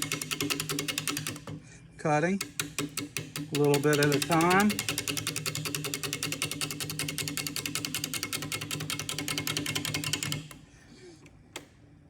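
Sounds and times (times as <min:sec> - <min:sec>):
gouge knocking on spinning wood: 0:02.4 - 0:09.8.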